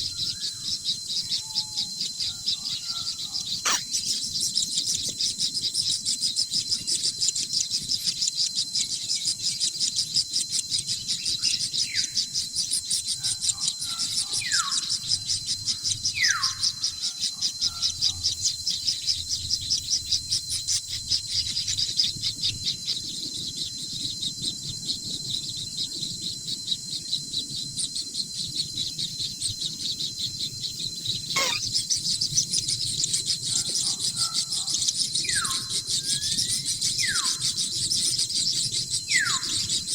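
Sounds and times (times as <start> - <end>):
chicks chirring: 2.2 - 5.0, 31.3 - 31.7
short falling whistles: 3.7 - 3.9, 31.4 - 31.6.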